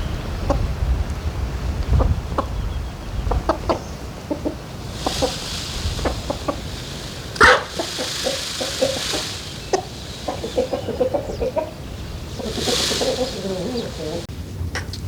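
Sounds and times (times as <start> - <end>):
chickens clucking: 1.8 - 14.3
chicken squawk: 4.4 - 14.3.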